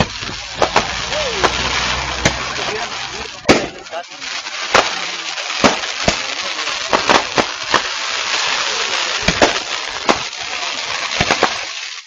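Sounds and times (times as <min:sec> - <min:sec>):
sharp pops and cracks: 0:00.0 - 0:02.5, 0:03.3 - 0:03.9, 0:04.7 - 0:10.4, 0:11.0 - 0:11.9
crackling hiss: 0:00.0 - 0:12.0.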